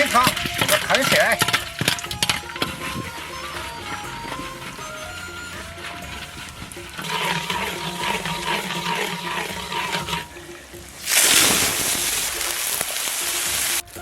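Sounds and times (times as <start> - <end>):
sugar bubbling in hot oil: 0.0 - 14.0
loud sizzle: 4.8 - 14.0.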